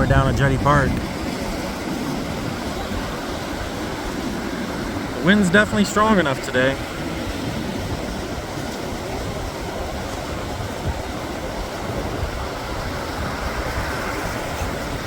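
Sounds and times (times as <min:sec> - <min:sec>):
ocean surf: 0:00.0 - 0:15.0
wind buffeting microphone: 0:00.0 - 0:15.0.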